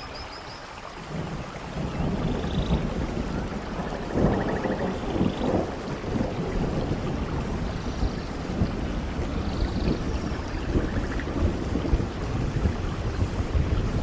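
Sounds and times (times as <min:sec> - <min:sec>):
heavy rain pouring: 0:00.0 - 0:14.0
low rumbling thunder: 0:01.0 - 0:14.0.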